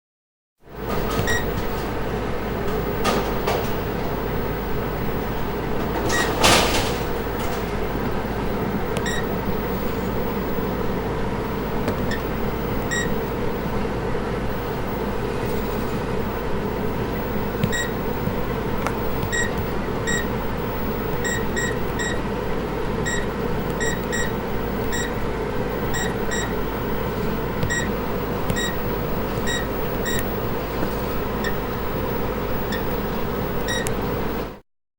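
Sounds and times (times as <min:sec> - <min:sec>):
short high computer beeps: 0:09.0 - 0:09.3, 0:17.7 - 0:18.0, 0:19.2 - 0:22.2, 0:23.1 - 0:25.2, 0:27.7 - 0:27.9, 0:28.6 - 0:28.8, 0:29.5 - 0:30.3.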